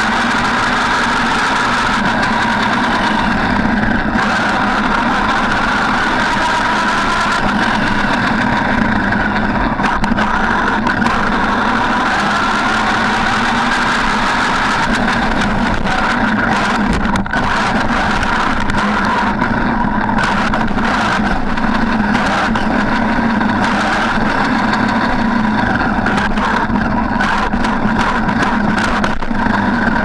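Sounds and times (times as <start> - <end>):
electric toy truck motor whine: 0.0 - 30.0
chassis clicks and knocks: 26.0 - 30.0.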